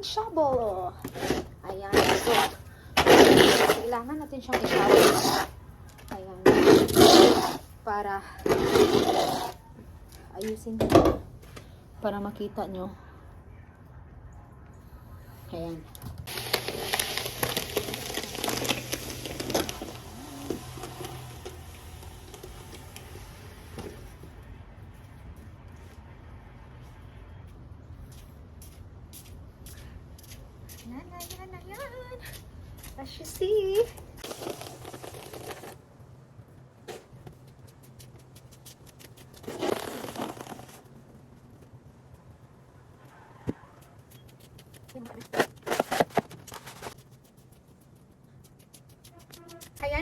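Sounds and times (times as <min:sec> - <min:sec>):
snow crunching: 0:00.1 - 0:05.6, 0:08.5 - 0:09.6, 0:16.3 - 0:24.2, 0:34.2 - 0:35.8, 0:37.7 - 0:41.2
snow shovel scraping: 0:01.0 - 0:05.6, 0:06.4 - 0:07.7, 0:08.4 - 0:09.6, 0:16.3 - 0:24.1, 0:34.2 - 0:35.8, 0:39.4 - 0:40.8, 0:45.2 - 0:47.0.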